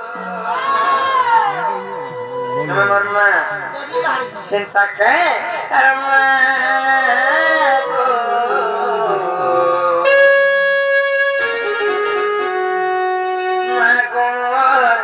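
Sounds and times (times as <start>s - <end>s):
reed instrument slow melody: 7.5s - 14.9s.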